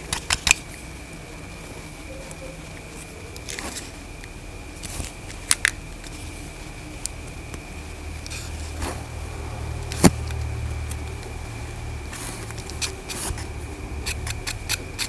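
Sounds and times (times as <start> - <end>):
low steady hum: 0.0 - 15.0.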